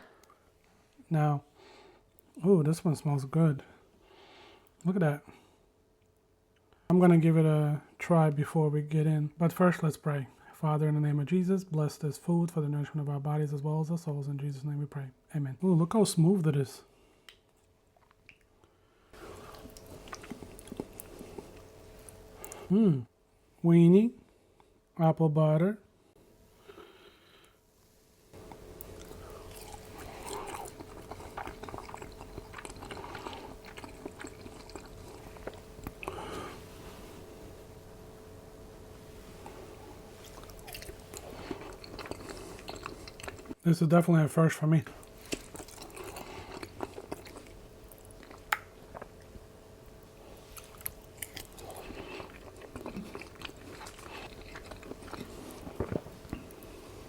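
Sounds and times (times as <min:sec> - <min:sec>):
person chewing with wet mouth sounds: 0:17.2 - 0:22.7, 0:28.4 - 0:36.7, 0:39.4 - 0:43.6, 0:45.0 - 0:49.4, 0:50.0 - 0:57.0.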